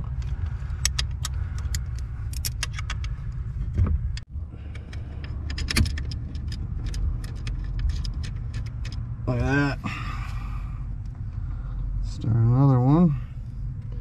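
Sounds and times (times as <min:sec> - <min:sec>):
metallic clicks of bolt and tools: 0:00.0 - 0:03.4, 0:04.1 - 0:09.1
steady low rumble: 0:00.0 - 0:14.0.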